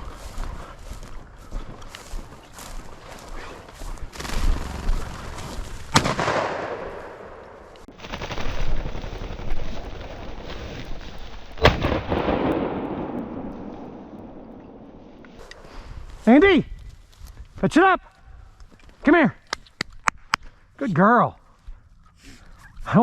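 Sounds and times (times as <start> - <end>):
rustling: 1.7 - 12.0
shotgun shots with echo: 5.9 - 8.8.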